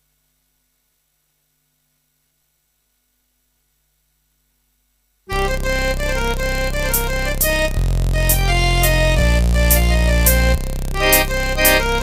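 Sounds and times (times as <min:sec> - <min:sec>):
keyboard organ melody: 0:05.3 - 0:12.0
steady bass line: 0:05.3 - 0:12.0.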